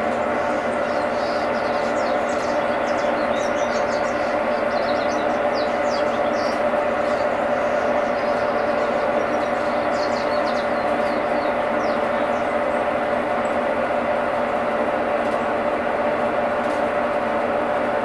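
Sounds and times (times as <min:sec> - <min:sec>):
birds chirping: 0:00.0 - 0:13.6
washing machine hum and whine: 0:00.0 - 0:18.0.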